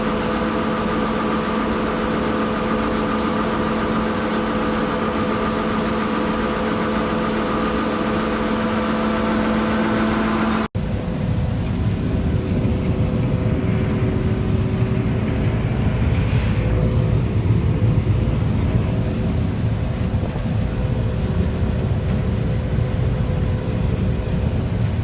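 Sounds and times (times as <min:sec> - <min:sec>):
combine harvester humming: 0:00.0 - 0:16.1.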